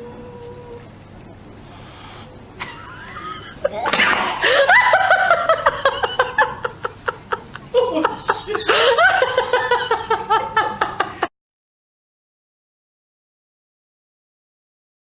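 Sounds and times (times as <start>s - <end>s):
person laughing hard: 2.6s - 11.3s.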